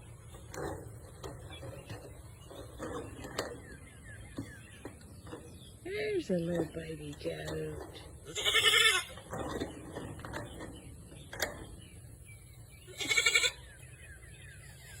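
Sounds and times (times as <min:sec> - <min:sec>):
goat bleating: 0:08.2 - 0:09.2, 0:12.9 - 0:13.7.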